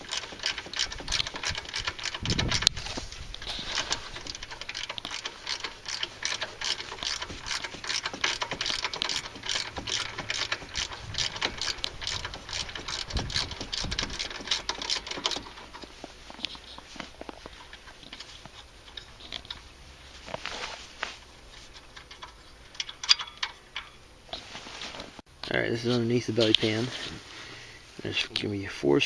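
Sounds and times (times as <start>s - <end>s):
socket ratchet wrench clicking: 0.0s - 2.8s, 3.4s - 16.6s.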